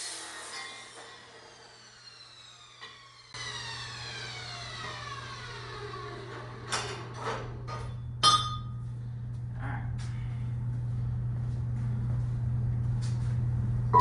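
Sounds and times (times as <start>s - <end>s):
power saw motor spinning down: 0.0s - 7.2s
steady low hum: 7.3s - 14.0s.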